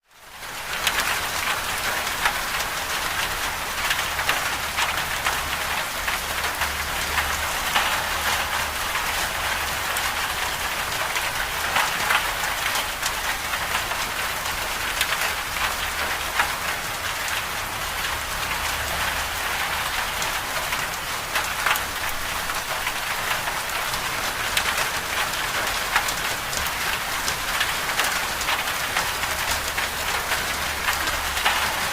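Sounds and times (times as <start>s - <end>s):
rain pattering: 0.1s - 31.9s.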